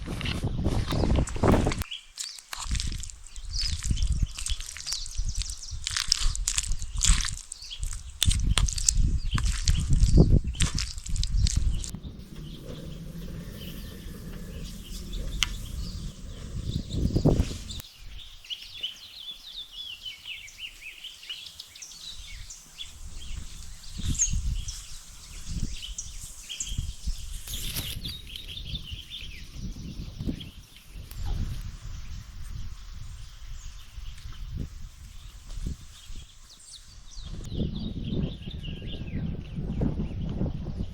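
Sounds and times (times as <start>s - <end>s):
small birds chirping: 0.2s - 40.9s
steady low rumble: 8.5s - 17.8s
low thumps: 9.8s - 17.8s.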